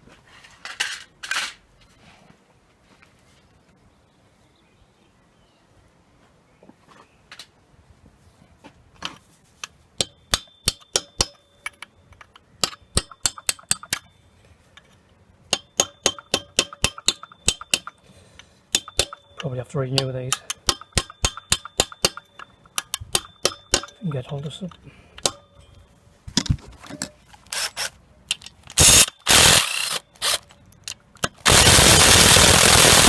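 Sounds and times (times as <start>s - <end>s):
hammer tapping on metal: 15.5s - 18.0s, 18.7s - 19.4s, 20.0s - 24.0s.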